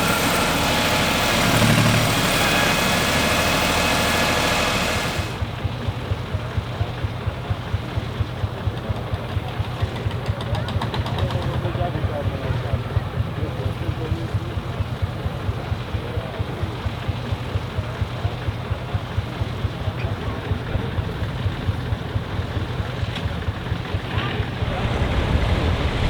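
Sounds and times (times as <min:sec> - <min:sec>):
combine harvester threshing: 0:00.0 - 0:05.6, 0:20.0 - 0:26.0
tractor diesel engine running: 0:00.0 - 0:26.0.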